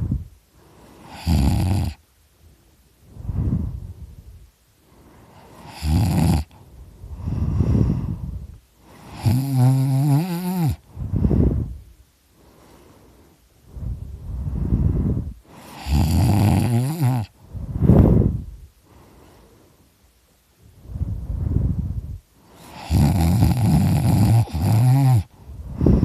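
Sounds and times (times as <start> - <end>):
soft breaths: 0.0 - 26.0
person snoring loudly: 1.0 - 2.0, 5.6 - 6.6, 9.1 - 10.8, 15.6 - 17.4, 22.6 - 26.0.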